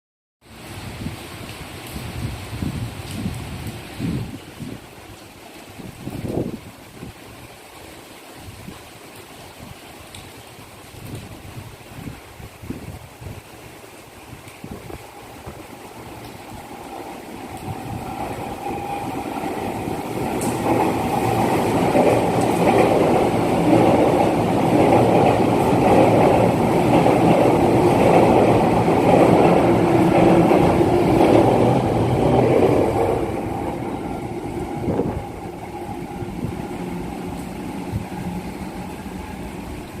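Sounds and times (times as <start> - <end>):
electric train running past: 13.9 - 40.0.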